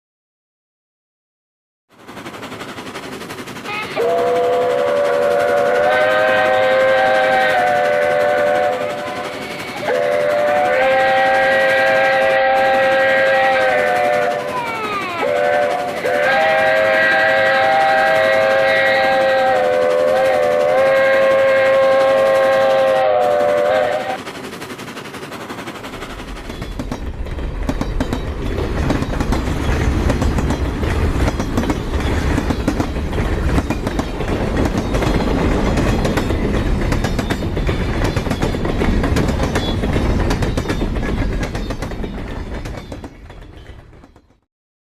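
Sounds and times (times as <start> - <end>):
train rumbling and clattering: 1.9 - 44.5
steam locomotive whistle: 3.6 - 24.3.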